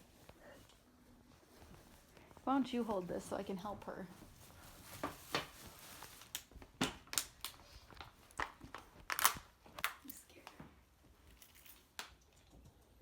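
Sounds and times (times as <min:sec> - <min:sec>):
handling knocks and rustles: 0:00.0 - 0:07.2.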